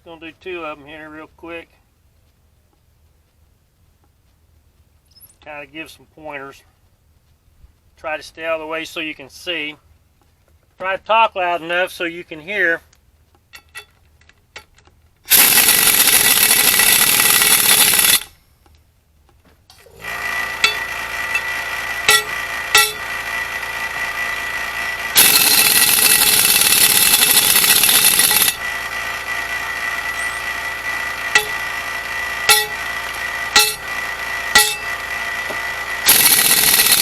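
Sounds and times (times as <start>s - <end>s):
air impact wrench hammering: 15.3s - 18.4s, 19.8s - 37.0s
steady ringing tone: 15.3s - 18.4s, 20.4s - 37.0s
scattered clicks: 25.1s - 28.8s.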